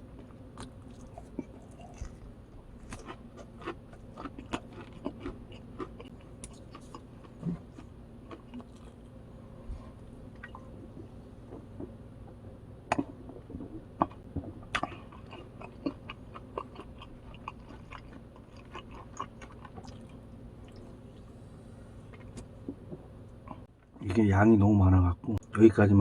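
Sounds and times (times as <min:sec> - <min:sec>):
person chewing food: 0:00.0 - 0:09.2, 0:12.9 - 0:21.3
steady low hum: 0:00.0 - 0:26.0.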